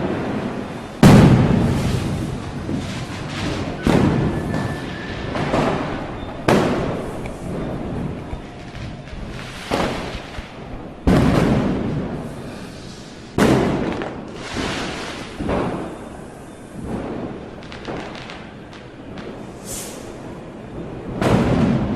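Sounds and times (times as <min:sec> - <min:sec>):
echoing rumble: 0:00.0 - 0:12.4
firecrackers banging: 0:00.0 - 0:21.9.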